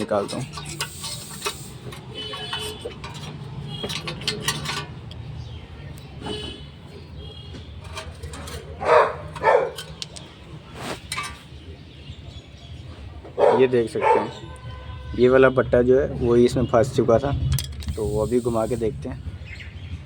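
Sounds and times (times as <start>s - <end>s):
screwdriver scraping metal: 0.0s - 5.2s, 7.8s - 10.2s, 10.8s - 11.5s, 17.8s - 18.9s
dog barking: 8.8s - 9.8s, 13.4s - 14.5s.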